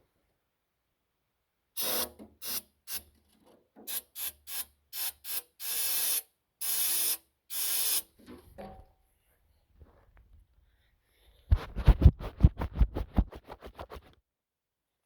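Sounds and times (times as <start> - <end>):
aerosol can spraying: 1.8 - 3.0, 3.9 - 8.1.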